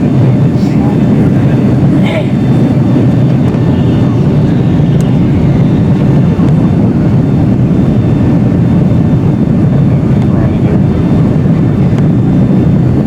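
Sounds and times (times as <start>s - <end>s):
faint steady whine: 0.0s - 13.0s
jet engine roar in cabin: 0.0s - 13.0s.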